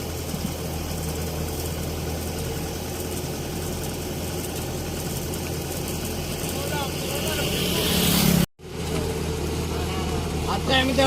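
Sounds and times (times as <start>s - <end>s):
diesel engine running: 0.0s - 11.0s.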